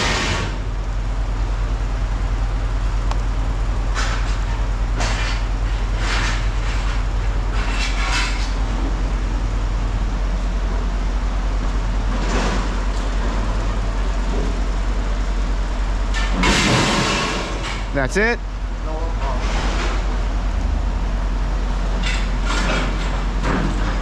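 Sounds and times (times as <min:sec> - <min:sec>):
low engine rumble: 0:00.0 - 0:24.0
noisy engine surges: 0:00.0 - 0:24.0.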